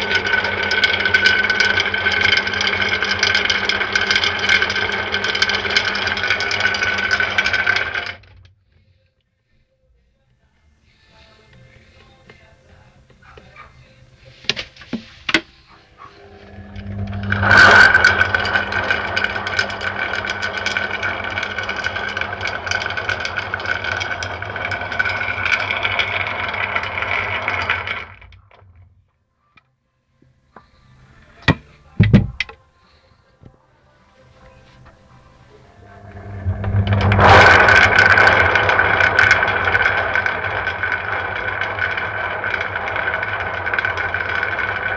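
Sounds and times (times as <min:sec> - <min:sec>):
washing machine motor hum: 0:12.2 - 0:28.2, 0:31.0 - 0:32.6, 0:34.8 - 0:44.9
sharp knocks: 0:31.5 - 0:32.6.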